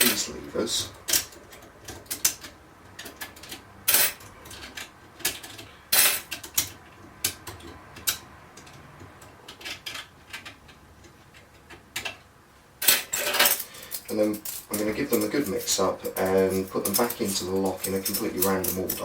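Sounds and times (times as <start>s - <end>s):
small metal parts clicking: 0.8s - 12.2s, 12.8s - 19.0s.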